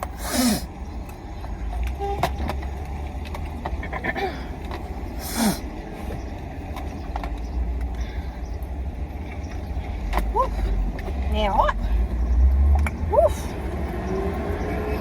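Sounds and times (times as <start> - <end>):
car idling: 0.0 - 12.4.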